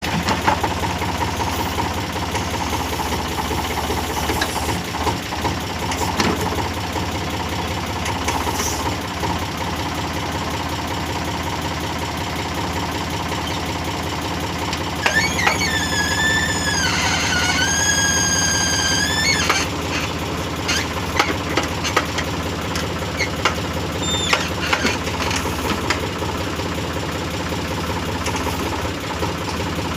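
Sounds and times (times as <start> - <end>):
diesel engine rumbling: 0.0 - 29.9.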